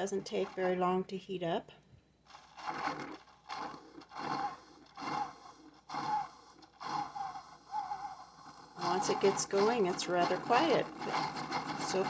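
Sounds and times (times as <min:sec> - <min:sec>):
coffee maker gurgling and hissing: 0:02.6 - 0:12.0.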